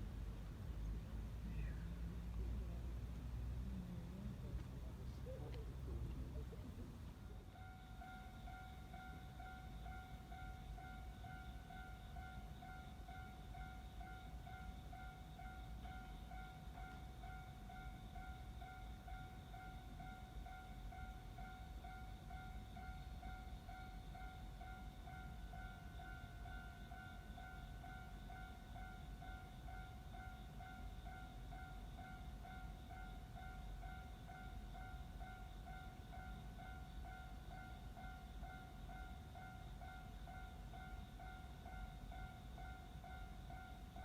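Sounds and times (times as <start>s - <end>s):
crossing bell dinging: 7.2s - 44.0s.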